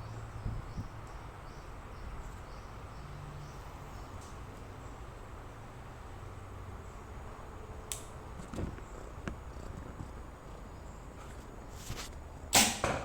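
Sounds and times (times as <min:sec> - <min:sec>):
insects humming: 0:00.0 - 0:13.0
bow shot snap: 0:12.6 - 0:13.0.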